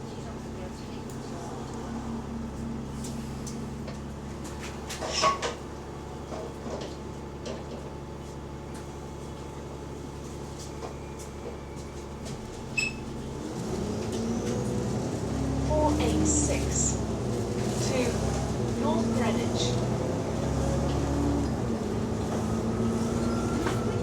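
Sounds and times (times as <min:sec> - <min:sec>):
diesel engine idling: 0:12.1 - 0:24.0.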